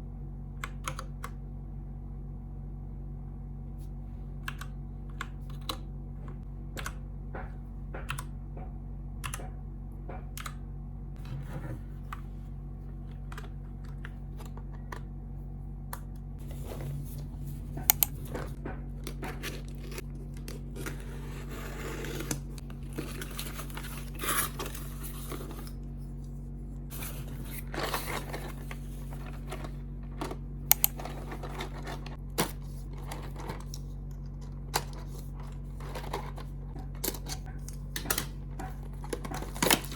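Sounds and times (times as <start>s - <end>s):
low steady hum: 0.0s - 39.9s
packaging rustling and tearing: 19.1s - 25.8s.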